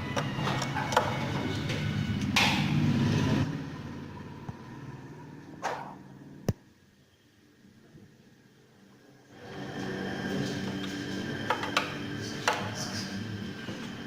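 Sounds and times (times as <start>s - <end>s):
engine running: 0.0s - 6.5s.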